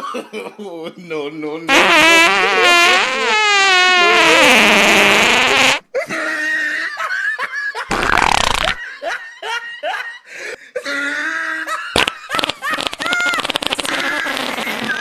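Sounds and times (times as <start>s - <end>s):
rasping fart-like noise: 1.7s - 5.8s, 7.9s - 8.8s, 12.0s - 15.0s
person laughing: 6.0s - 15.0s.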